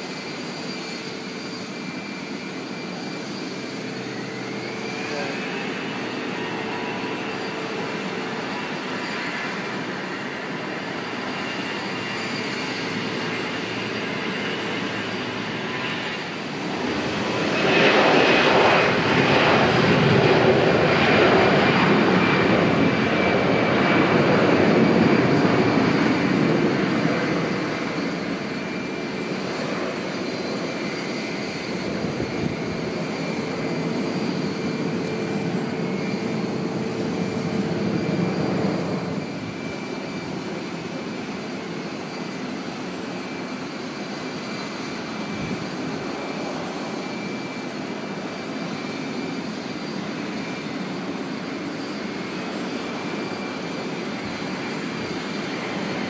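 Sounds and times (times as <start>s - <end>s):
airliner engines humming: 0.0s - 56.0s.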